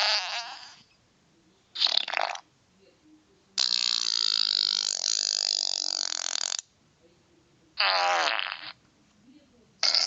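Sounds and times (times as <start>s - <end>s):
cartoon stomach growling: 0.0s - 0.8s.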